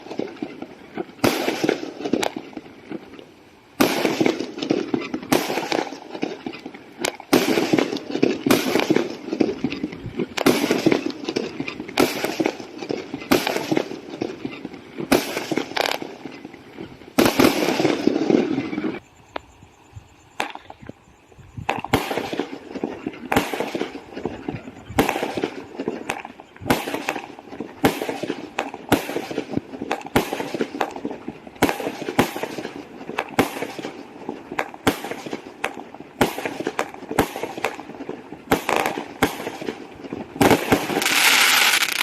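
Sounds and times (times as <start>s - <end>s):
fireworks banging: 0.0s - 19.0s, 20.4s - 21.0s, 21.6s - 42.0s
fireworks crackling: 0.0s - 19.0s, 20.3s - 42.0s.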